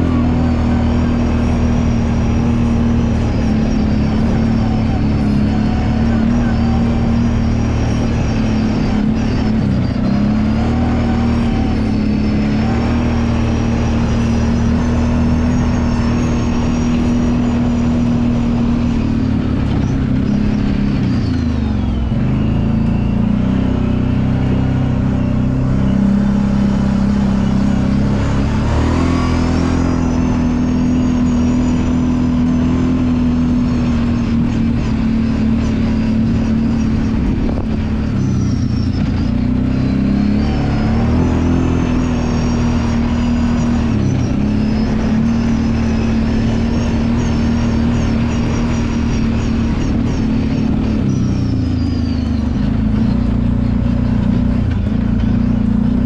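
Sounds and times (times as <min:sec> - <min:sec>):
atv engine running: 0:00.0 - 0:56.0.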